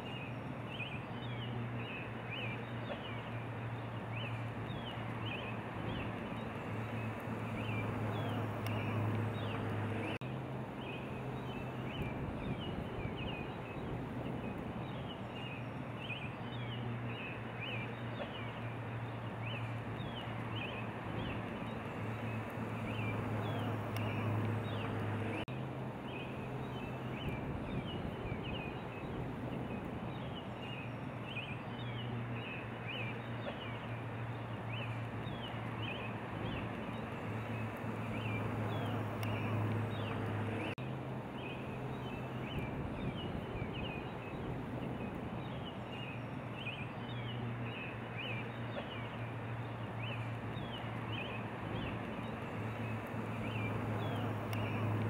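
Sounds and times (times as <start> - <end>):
small birds chirping: 10.8 - 40.8, 41.4 - 55.0.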